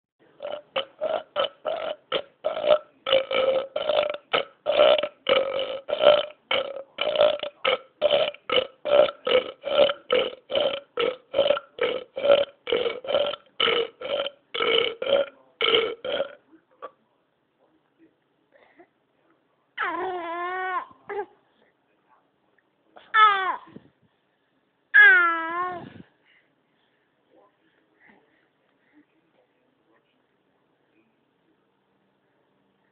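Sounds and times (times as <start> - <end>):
man burping: 0.4 - 16.9.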